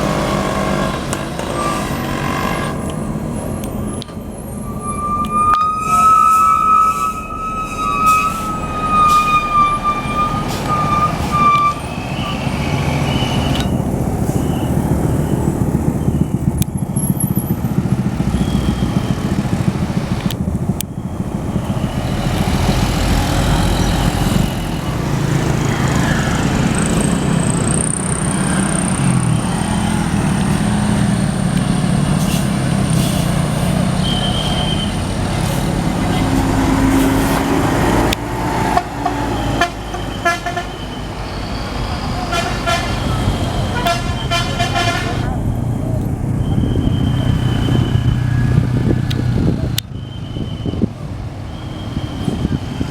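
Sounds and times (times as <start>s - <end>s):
bus engine running: 0.0s - 52.9s
road traffic: 0.0s - 52.9s
multi-tone bus horn: 4.6s - 14.7s, 32.2s - 41.2s, 41.9s - 45.5s.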